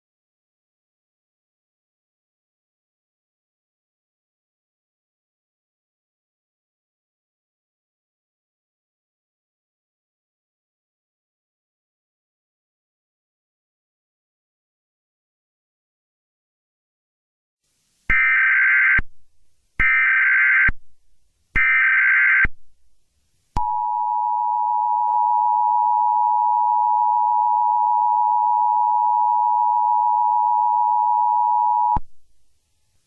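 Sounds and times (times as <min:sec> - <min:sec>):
two-tone attention signal: 0:23.6 - 0:32.0.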